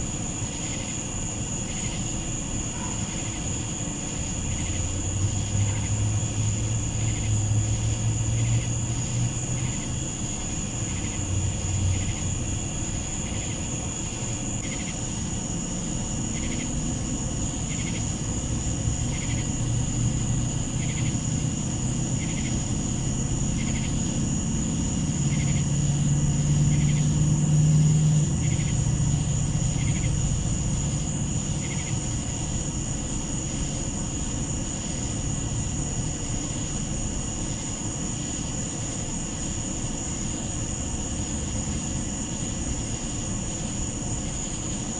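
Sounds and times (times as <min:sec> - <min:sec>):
night insects droning: 0:00.0 - 0:44.9
short insect call: 0:00.0 - 0:44.9
distant engine rumble: 0:15.3 - 0:44.9.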